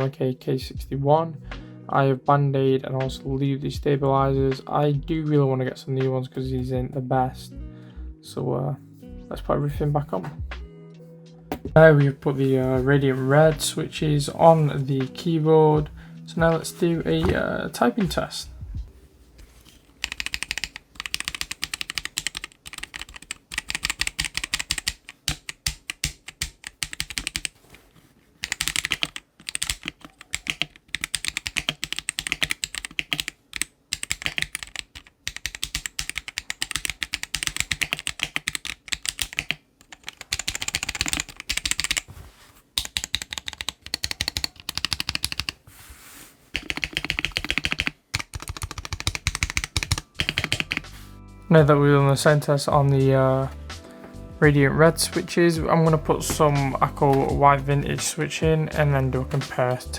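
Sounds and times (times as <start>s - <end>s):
mechanical keyboard typing: 20.0s - 27.6s, 28.4s - 42.1s, 42.8s - 45.6s, 46.6s - 51.0s.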